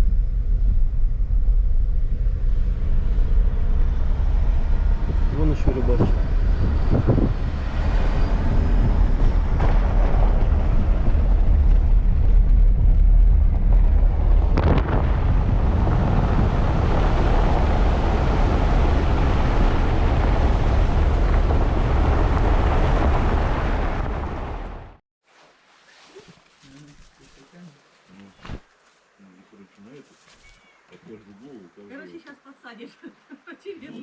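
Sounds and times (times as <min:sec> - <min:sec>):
car engine and road noise: 0:00.0 - 0:25.0.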